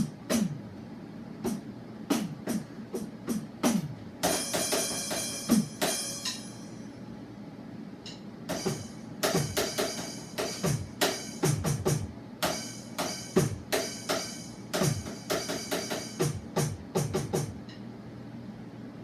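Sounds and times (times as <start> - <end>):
electronic snare hits: 1.4 - 6.6, 8.5 - 17.6.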